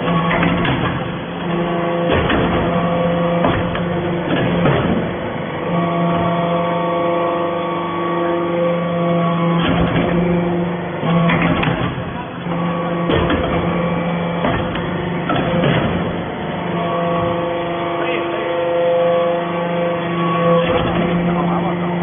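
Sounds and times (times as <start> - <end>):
motor and pump hum: 0.0 - 22.0
press knocking: 11.0 - 16.2.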